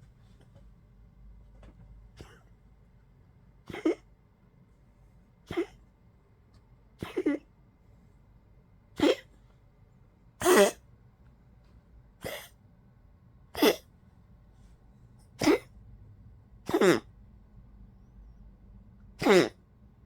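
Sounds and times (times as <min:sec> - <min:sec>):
dog coughing: 0:02.1 - 0:02.6, 0:03.6 - 0:04.1, 0:05.4 - 0:05.8, 0:07.0 - 0:07.5, 0:08.9 - 0:09.4, 0:10.4 - 0:10.8, 0:12.2 - 0:12.6, 0:13.6 - 0:13.9, 0:15.4 - 0:15.8, 0:16.6 - 0:17.1, 0:19.2 - 0:19.6.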